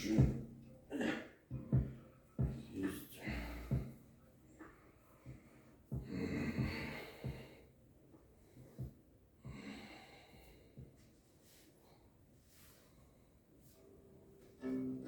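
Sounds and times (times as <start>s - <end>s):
soft thumps: 1.5s - 2.7s, 3.6s - 7.6s
person breathing hard: 5.1s - 7.7s, 8.5s - 11.0s.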